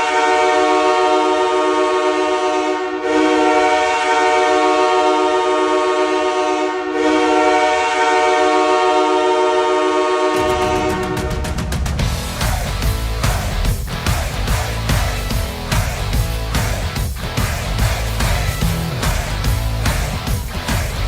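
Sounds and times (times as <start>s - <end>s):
goal horn blasts: 0.0s - 11.5s.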